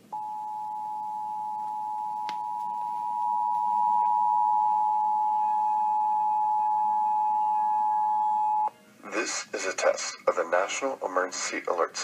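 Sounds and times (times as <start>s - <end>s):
steady two-tone alert signal: 0.1s - 8.7s.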